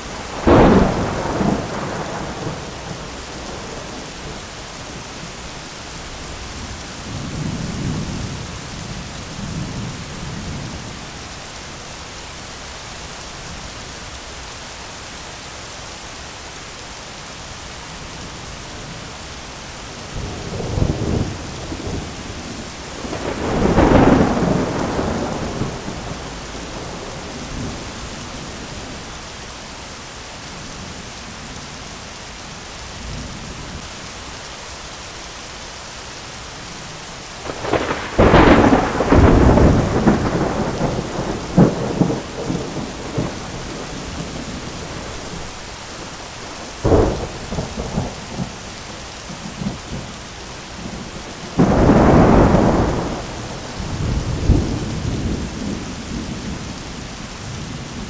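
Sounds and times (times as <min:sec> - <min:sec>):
thunder rumbling: 0:00.0 - 0:05.4, 0:20.0 - 0:29.1, 0:37.4 - 0:58.0
steady rain: 0:00.0 - 0:58.0.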